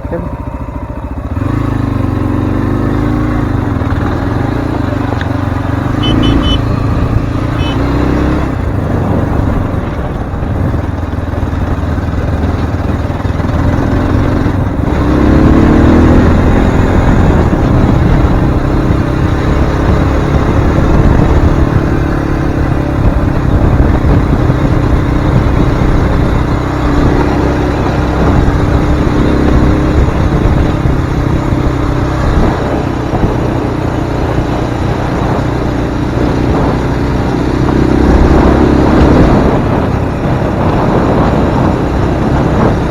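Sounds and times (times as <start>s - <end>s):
motorcycle engine running: 0.0s - 42.9s
rumble of riding noise: 0.0s - 42.9s.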